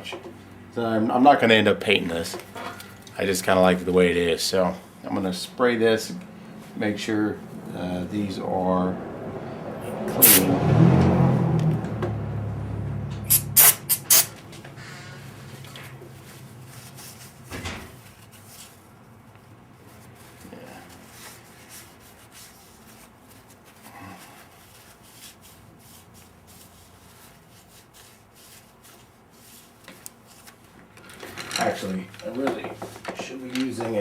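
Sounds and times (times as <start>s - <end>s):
aerosol spray hissing: 10.2s - 10.5s, 13.3s - 14.3s.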